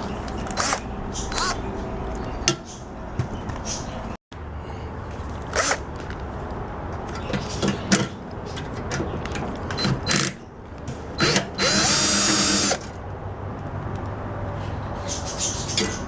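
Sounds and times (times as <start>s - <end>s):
tool and metal clicks and knocks: 5.9s - 11.5s
power drill whirring: 11.2s - 12.8s.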